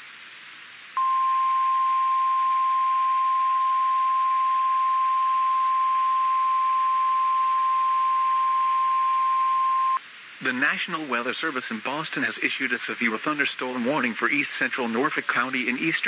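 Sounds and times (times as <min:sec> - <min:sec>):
light hiss: 0:00.0 - 0:16.0
steady high alarm beep: 0:01.0 - 0:10.0.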